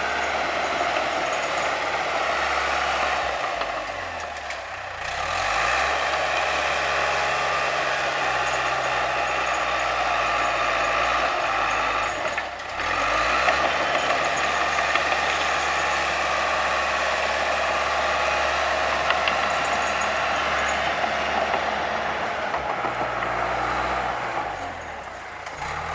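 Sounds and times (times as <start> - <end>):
bulldozer diesel engine under load: 0.0 - 25.9.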